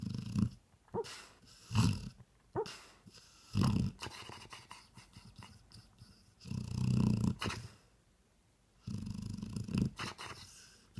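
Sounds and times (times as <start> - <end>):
dog snoring: 0.0 - 1.1, 1.7 - 2.7, 3.5 - 4.4, 6.4 - 7.6, 8.8 - 10.7
dog snorting: 0.0 - 5.4, 8.9 - 10.6.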